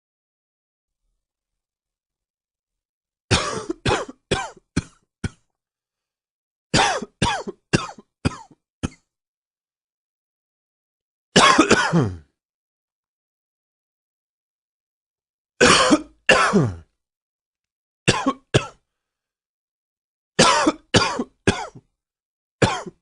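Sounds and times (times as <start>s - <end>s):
man coughing: 3.3s - 5.4s, 6.8s - 9.0s, 11.4s - 12.3s, 15.6s - 16.9s, 18.1s - 18.8s, 20.4s - 21.8s, 22.6s - 23.0s.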